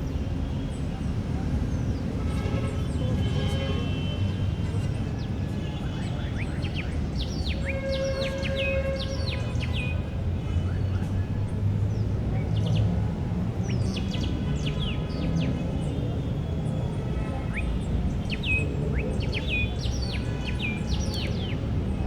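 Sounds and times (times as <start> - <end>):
low rumble of park background: 0.0 - 22.0.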